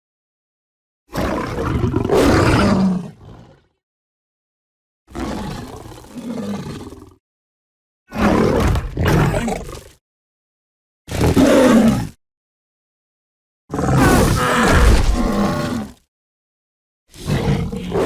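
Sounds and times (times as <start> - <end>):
big cat roars: 1.2 - 3.8, 5.1 - 7.2, 8.1 - 10.0, 11.1 - 12.2, 13.7 - 16.0, 17.1 - 18.0.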